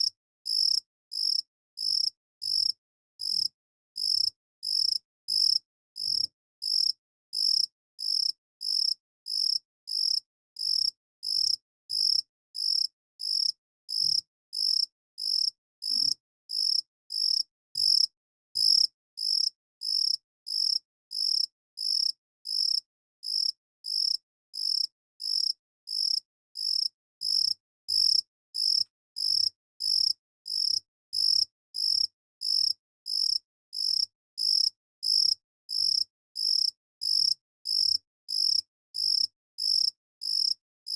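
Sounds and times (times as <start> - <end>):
cricket chirping: 18.7 - 40.5.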